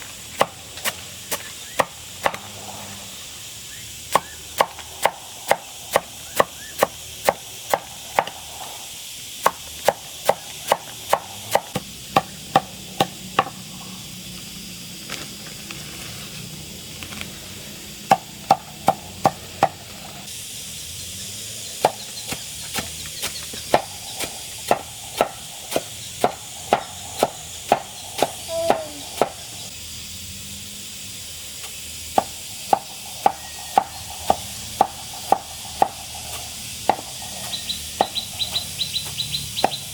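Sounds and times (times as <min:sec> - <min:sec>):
blade chopping plant stalks: 0:00.0 - 0:02.6, 0:04.1 - 0:08.5, 0:09.4 - 0:13.6, 0:21.8 - 0:29.4, 0:31.6 - 0:39.9.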